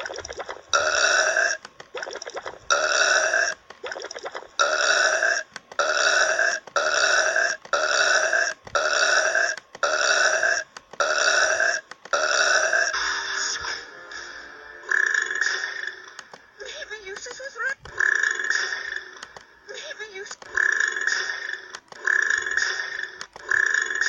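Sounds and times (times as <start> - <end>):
loud burps: 2.7 - 3.6, 4.6 - 13.0, 14.8 - 16.0, 18.0 - 19.0, 20.5 - 24.0.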